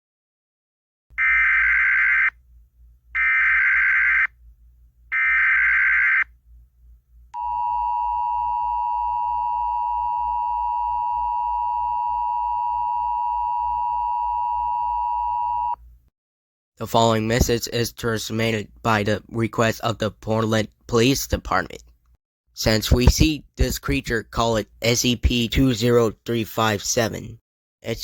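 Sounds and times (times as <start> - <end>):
faint low hum: 6.3 - 16.1.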